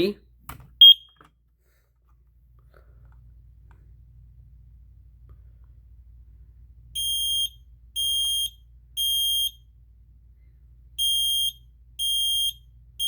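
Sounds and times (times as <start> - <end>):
smoke alarm beeping: 0.8 - 1.2, 7.0 - 9.7, 11.0 - 13.0.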